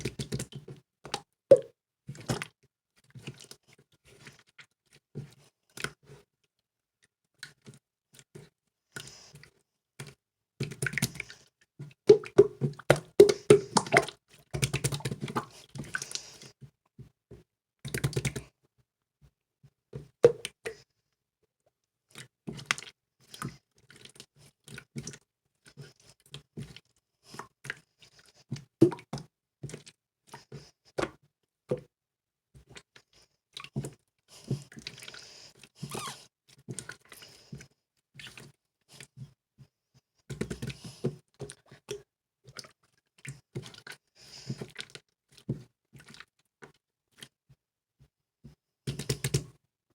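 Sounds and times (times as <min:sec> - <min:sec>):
slime squeezed by hand: 0:35.8 - 0:36.2.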